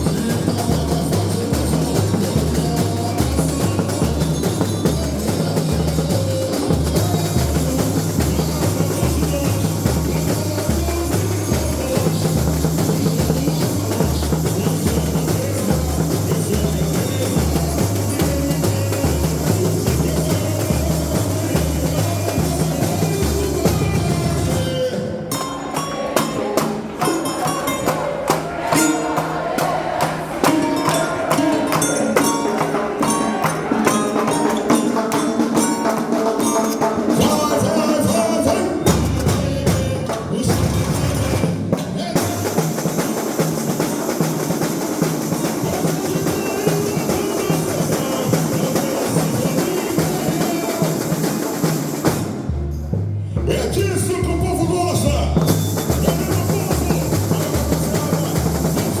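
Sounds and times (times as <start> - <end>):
bass drum beat: 0.0 - 24.9, 37.2 - 42.8, 52.3 - 59.0
samba percussion: 0.0 - 59.0.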